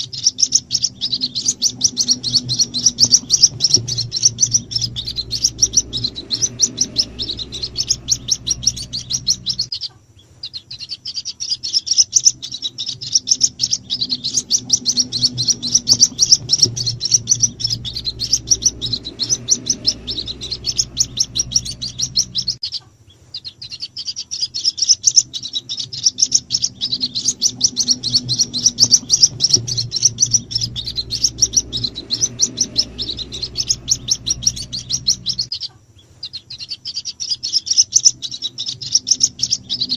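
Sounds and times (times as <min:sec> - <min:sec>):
bird chicks cheeping: 0:00.0 - 0:39.9
faint low hum: 0:00.0 - 0:39.9.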